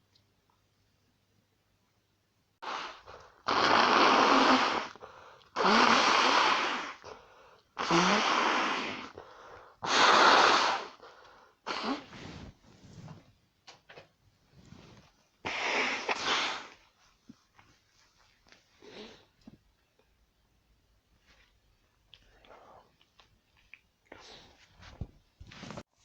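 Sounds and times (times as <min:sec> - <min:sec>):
person blowing nose: 0:02.6 - 0:07.2, 0:07.8 - 0:13.1, 0:14.7 - 0:17.0.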